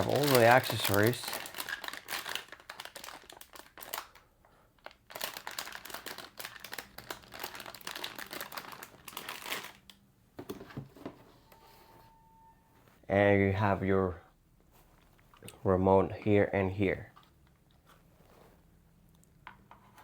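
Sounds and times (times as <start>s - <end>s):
packaging crinkling: 0.0s - 10.0s.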